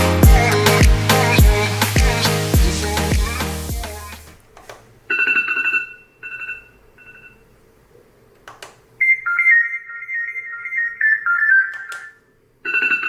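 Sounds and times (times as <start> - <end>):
click: 8.4 - 8.8
beeping ringtone melody: 9.0 - 13.0.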